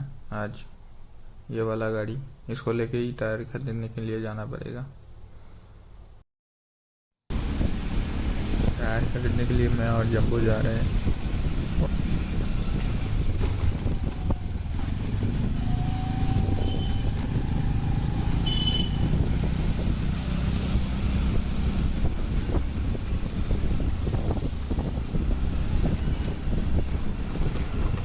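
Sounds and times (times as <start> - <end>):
motorbike engine and road rumble: 7.3 - 28.0
wind noise on microphone: 7.3 - 28.0
brief high beeps: 18.5 - 19.0.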